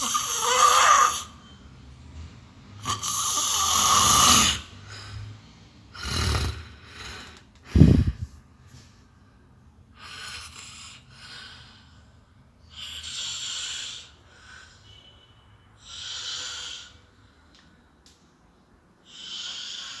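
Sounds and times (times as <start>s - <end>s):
man snoring heavily: 0.0s - 1.3s, 2.8s - 4.7s, 6.0s - 8.2s.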